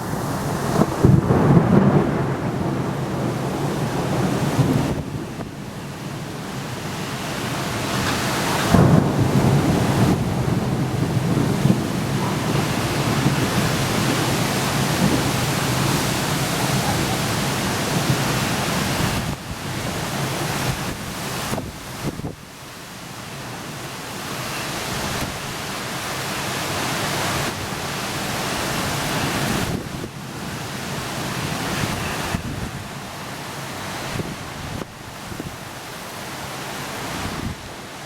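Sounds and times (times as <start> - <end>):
low thunder rumble: 0.0 - 6.8, 7.4 - 22.4
rain and wind rushing: 0.0 - 38.0.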